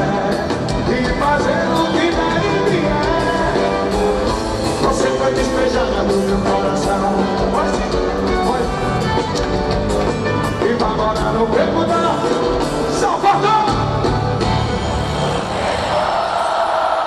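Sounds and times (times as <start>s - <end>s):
person singing: 0.0s - 9.5s.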